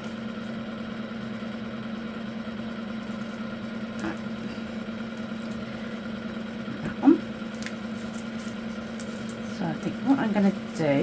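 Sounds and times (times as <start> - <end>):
steady machine hum: 0.0 - 11.0.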